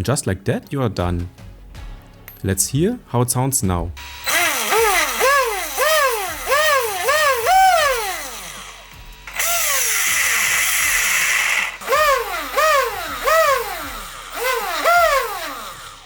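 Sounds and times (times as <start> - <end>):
electric motor whine: 4.0 - 16.0.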